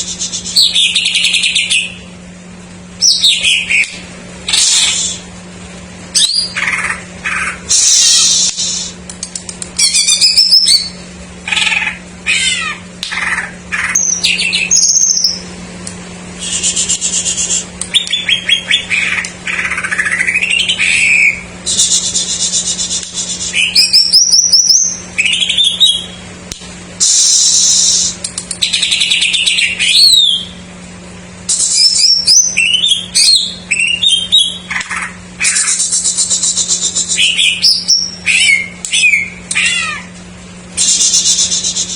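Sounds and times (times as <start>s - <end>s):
steady low hum: 0.0s - 41.9s
leafbird singing trills and whistles: 9.8s - 11.8s, 13.1s - 15.5s, 16.4s - 26.2s, 27.0s - 30.6s, 31.5s - 39.8s.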